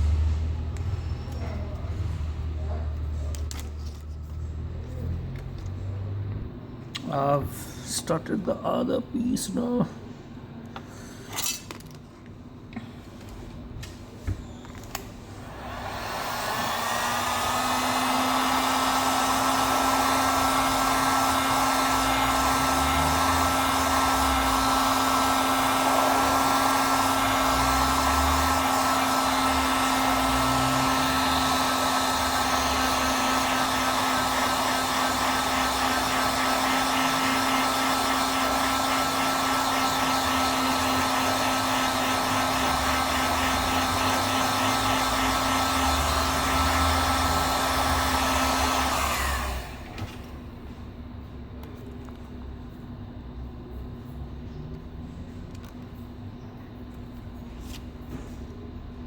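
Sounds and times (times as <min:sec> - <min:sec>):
hot-air blower whirring: 0:12.8 - 0:50.8.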